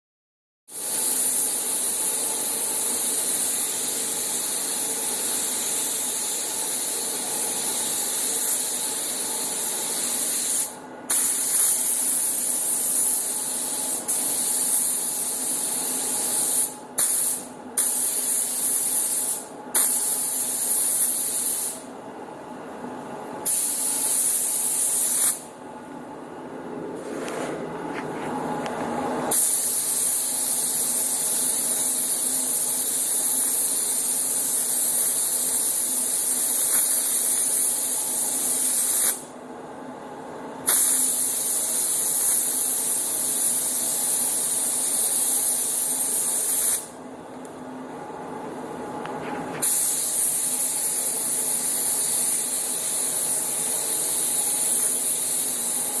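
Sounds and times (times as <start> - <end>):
paint spray gun hissing: 0.7 - 21.8, 23.4 - 25.4, 29.3 - 39.2, 40.7 - 46.9, 49.6 - 56.0.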